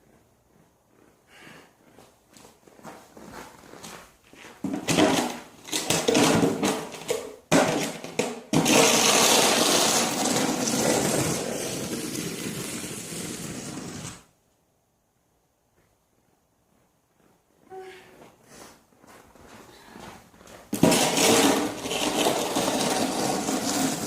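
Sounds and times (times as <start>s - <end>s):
snow shovel scraping ground: 8.7s - 14.2s, 20.8s - 24.0s.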